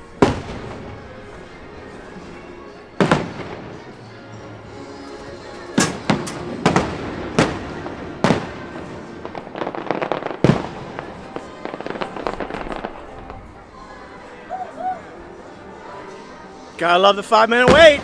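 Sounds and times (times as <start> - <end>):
fireworks bangs: 0.0 - 13.9, 17.5 - 18.0
fireworks crackling: 0.0 - 14.1, 16.8 - 18.0
music playing: 0.0 - 18.0.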